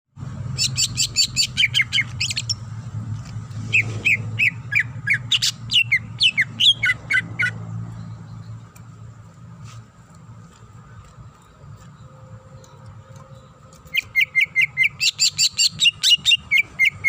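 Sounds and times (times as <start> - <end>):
bird singing whistled chirps: 13.4 - 17.0.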